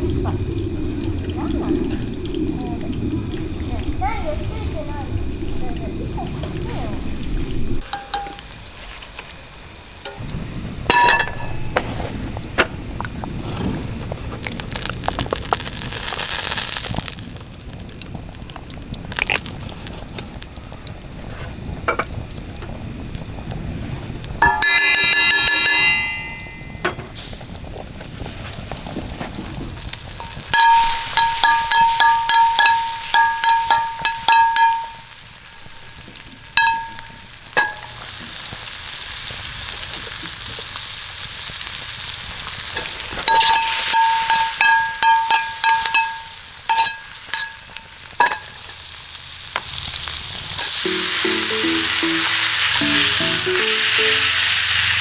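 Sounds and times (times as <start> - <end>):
food sizzling in a frying pan: 0.0 - 55.0
short ringing clang: 24.4 - 27.2.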